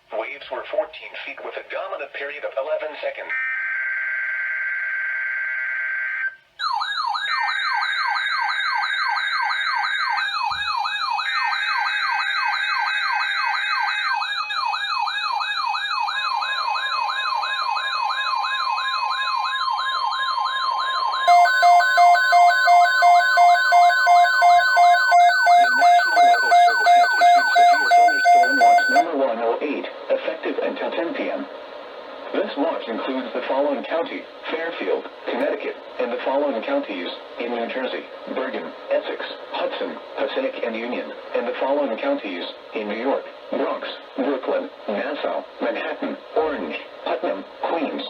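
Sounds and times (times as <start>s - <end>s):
wavering siren-like alarm: 3.4s - 29.1s
rapid two-tone beeping: 21.2s - 29.1s
steady warning tone: 21.2s - 29.1s
buzzy digital header tones: 21.3s - 29.1s.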